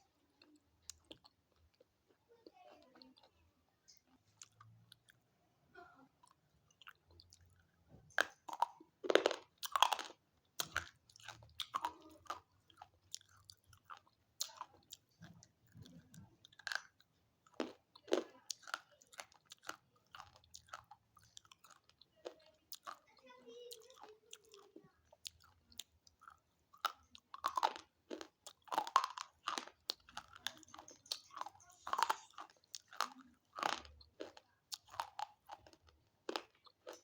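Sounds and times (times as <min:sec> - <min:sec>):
person crunching brittle pieces: 0:08.2 - 0:15.1, 0:25.3 - 0:37.0.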